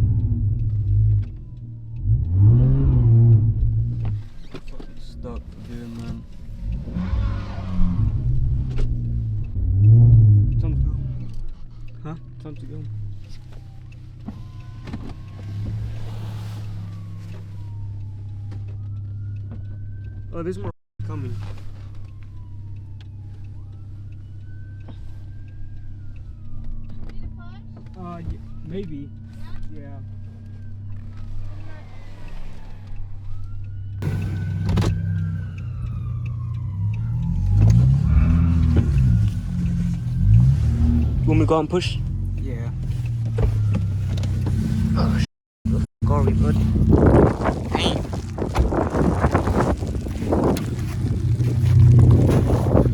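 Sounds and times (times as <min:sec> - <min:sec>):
car engine idling: 0:34.0 - 0:52.9.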